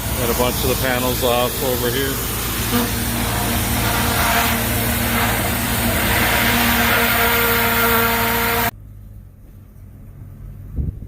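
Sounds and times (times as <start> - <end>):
pressure washer spraying: 0.0 - 8.7
faint wind: 0.0 - 11.0.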